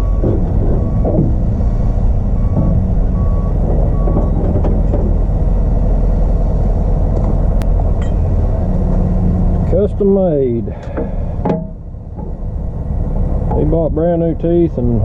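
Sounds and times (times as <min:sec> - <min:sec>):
reverse alarm beeping: 0:00.0 - 0:04.4
diesel engine running: 0:00.0 - 0:15.0.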